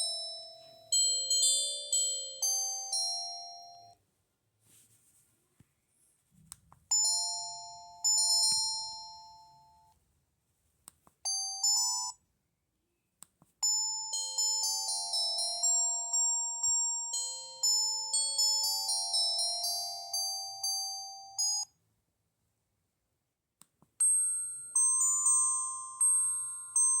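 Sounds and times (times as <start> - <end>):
phone ringtone melody: 0.0 - 4.0, 6.9 - 9.9, 11.3 - 12.2, 13.6 - 21.7, 24.0 - 27.0.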